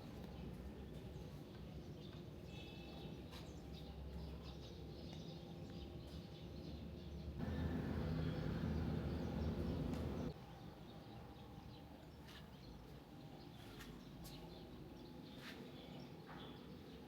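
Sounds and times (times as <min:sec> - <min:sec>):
low steady rumble: 0:07.4 - 0:10.3.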